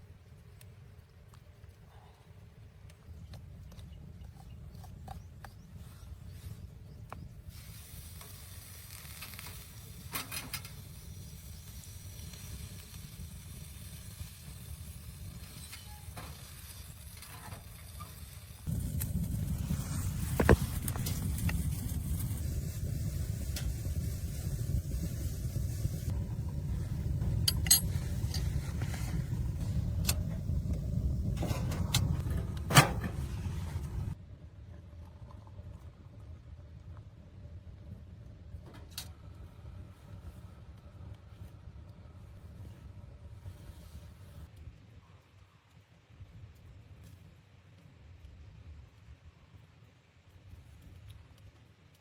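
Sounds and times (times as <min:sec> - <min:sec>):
blowing snow hiss: 0:07.5 - 0:34.2
short crackles: 0:15.4 - 0:34.2
wind rumbling on microphone: 0:17.8 - 0:44.9.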